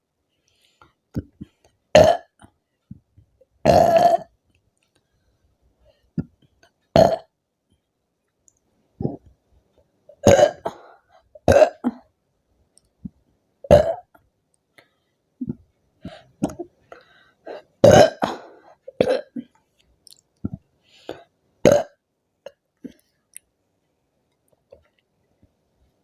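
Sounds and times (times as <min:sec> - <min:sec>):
woman burping: 0:01.9 - 0:02.5, 0:03.6 - 0:04.3, 0:07.0 - 0:07.3, 0:10.2 - 0:12.1, 0:13.6 - 0:14.2, 0:16.4 - 0:16.7, 0:17.8 - 0:19.5, 0:21.6 - 0:23.0.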